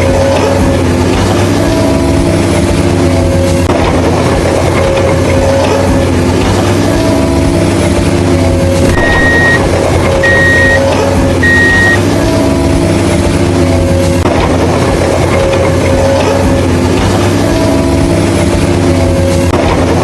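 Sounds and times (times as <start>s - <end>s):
heavy vehicle engine running: 0.0s - 20.0s
reversing alarm beeps: 8.8s - 12.1s.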